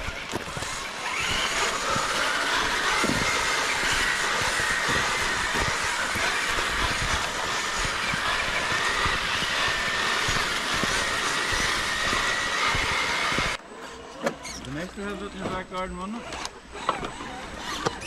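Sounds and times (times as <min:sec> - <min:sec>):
chassis knocks and rattles: 0:00.0 - 0:13.6
electric motor whining: 0:00.0 - 0:18.0.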